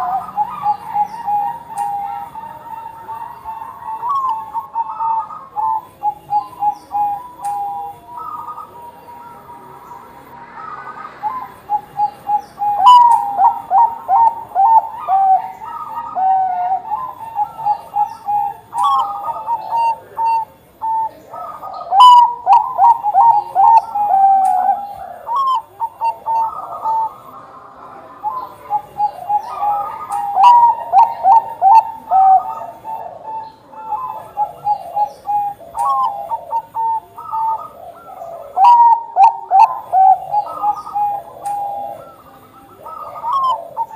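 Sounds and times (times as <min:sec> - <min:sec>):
doves cooing: 0:00.0 - 0:43.9.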